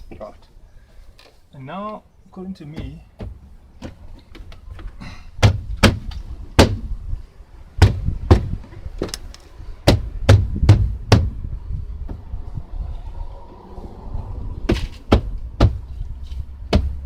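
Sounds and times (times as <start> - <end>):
knocks on car door panel: 5.4 - 6.8, 7.8 - 8.6, 9.8 - 11.4, 15.1 - 15.8.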